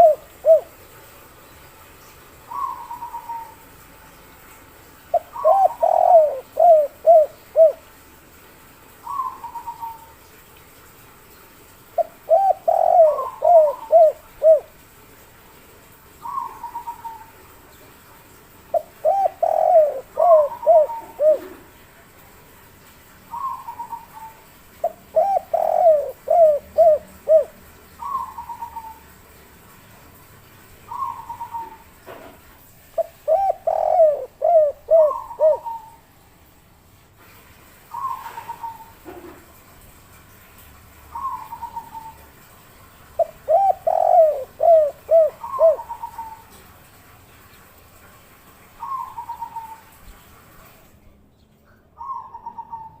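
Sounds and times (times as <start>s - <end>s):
dove cooing: 0.0s - 0.8s, 2.5s - 3.6s, 5.1s - 7.9s, 9.0s - 10.1s, 12.0s - 14.8s, 16.2s - 17.4s, 18.7s - 21.8s, 23.3s - 29.1s, 30.9s - 31.9s, 33.0s - 36.0s, 37.9s - 39.4s, 41.1s - 42.2s, 43.2s - 46.5s, 48.8s - 49.9s, 52.0s - 53.0s.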